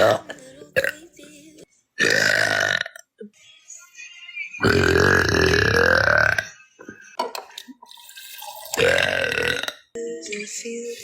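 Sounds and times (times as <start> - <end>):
woman belching: 0.0 - 1.0, 2.0 - 3.1, 4.6 - 6.5, 8.5 - 9.9.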